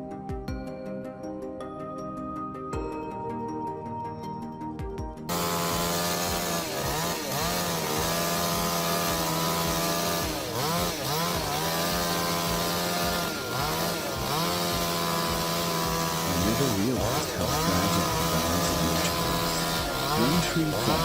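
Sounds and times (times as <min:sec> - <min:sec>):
chainsaw cutting wood: 0:05.3 - 0:21.0.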